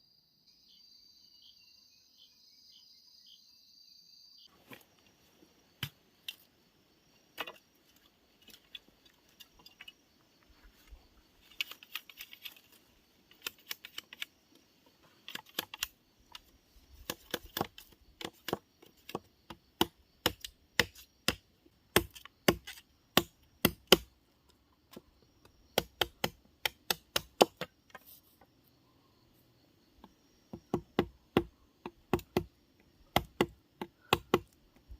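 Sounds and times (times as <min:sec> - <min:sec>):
hand tools tapping on wood: 0:17.0 - 0:24.1, 0:25.8 - 0:28.5, 0:30.0 - 0:34.9.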